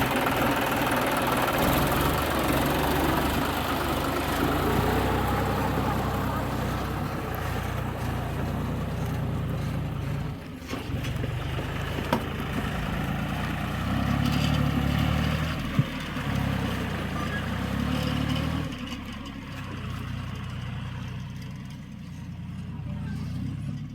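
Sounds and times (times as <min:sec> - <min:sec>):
backhoe diesel engine running: 0:00.0 - 0:23.9.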